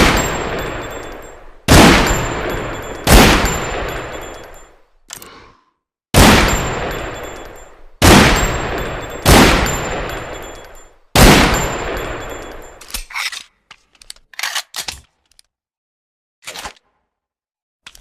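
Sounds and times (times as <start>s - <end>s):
pistol shots echoing: 0.0s - 4.6s, 6.2s - 12.8s.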